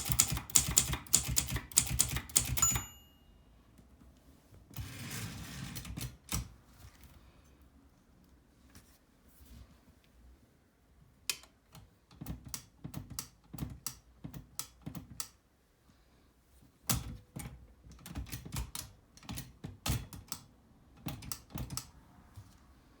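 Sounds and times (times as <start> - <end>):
typewriter key strikes: 0.0 - 3.0.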